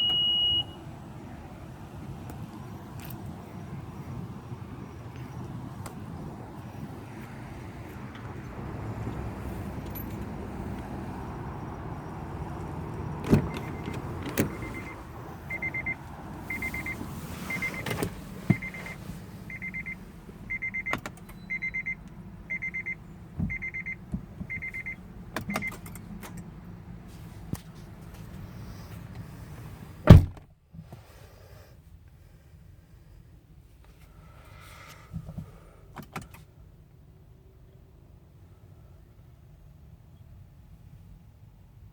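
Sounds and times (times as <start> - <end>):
car warning chime beeping: 0.0 - 1.0, 13.0 - 25.8
clicks and clunks: 12.9 - 15.0
loud thump: 30.1 - 30.4.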